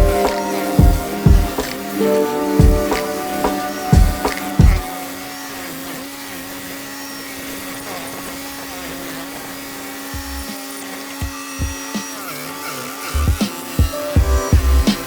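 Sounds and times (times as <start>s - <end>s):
low thumps: 0.0s - 1.7s, 2.6s - 3.0s, 3.9s - 4.9s
stump cutter humming: 0.0s - 13.8s.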